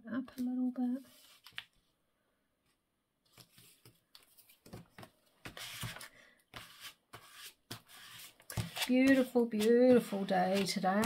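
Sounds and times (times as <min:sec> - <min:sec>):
paper rustling and rubbing: 0:03.4 - 0:11.0.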